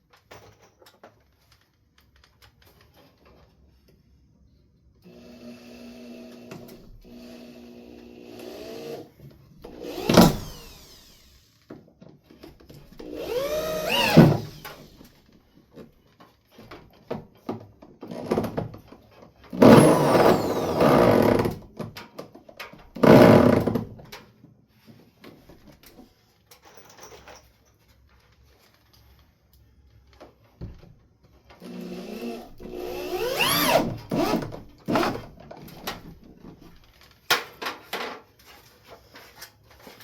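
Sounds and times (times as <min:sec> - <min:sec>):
power drill driving screws: 0:05.1 - 0:11.6, 0:13.0 - 0:15.1, 0:19.6 - 0:21.6, 0:23.0 - 0:23.8, 0:31.6 - 0:35.4.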